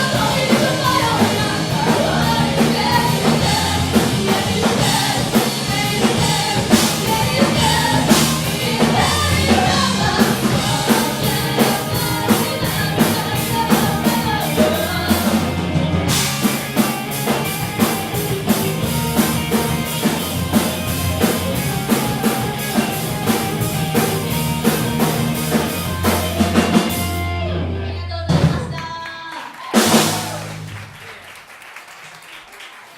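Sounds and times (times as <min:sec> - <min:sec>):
person singing: 0:00.0 - 0:15.7
rock band playing: 0:00.0 - 0:28.9, 0:29.7 - 0:31.0.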